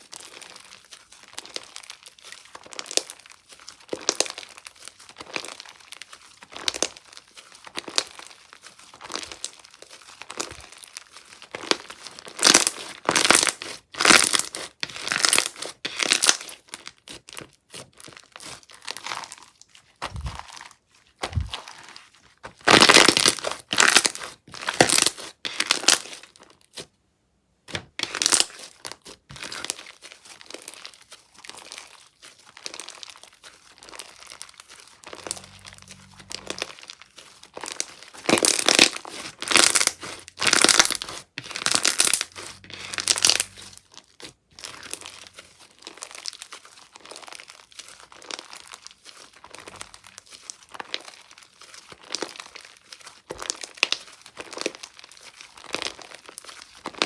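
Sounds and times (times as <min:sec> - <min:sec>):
slime crackling when squeezed: 0:33.8 - 0:44.0.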